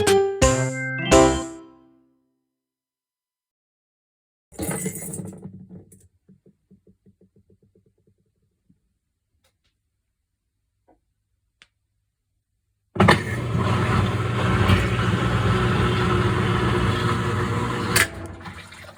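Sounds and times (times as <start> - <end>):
washing machine running: 13.0 - 18.9.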